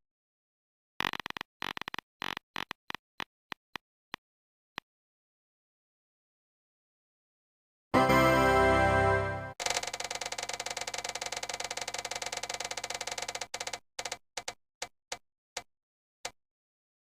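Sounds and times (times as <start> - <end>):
run of clicks: 9.6 - 16.4.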